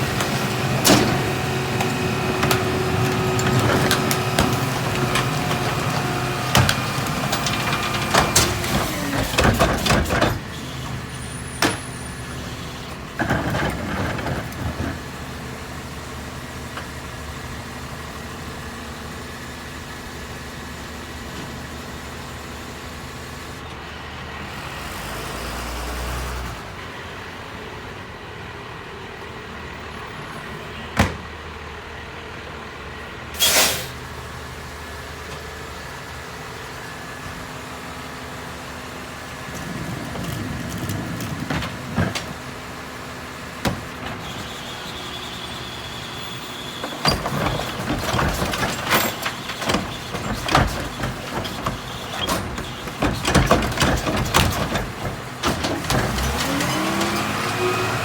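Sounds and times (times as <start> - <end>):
trash clattering and banging: 0.0 - 17.0, 37.1 - 58.0
garbage truck engine idling: 0.0 - 25.2, 26.2 - 58.0
short burst of hiss: 33.4 - 34.0.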